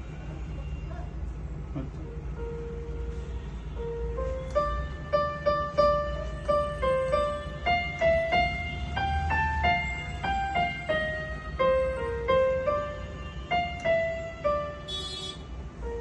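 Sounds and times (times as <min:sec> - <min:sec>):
piano melody: 0:02.0 - 0:16.0.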